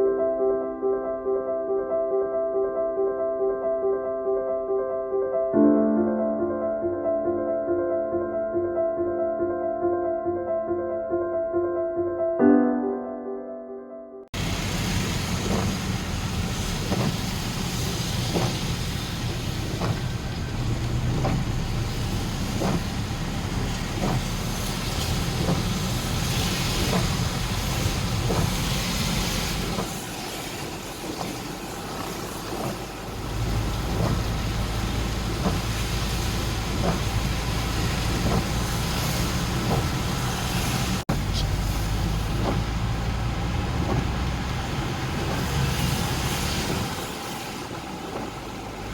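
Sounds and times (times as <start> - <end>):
vehicle engine rumble: 14.4 - 48.9.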